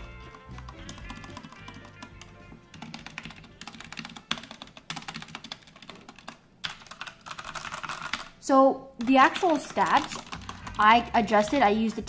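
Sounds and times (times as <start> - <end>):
background music: 0.0 - 5.0, 9.0 - 12.0.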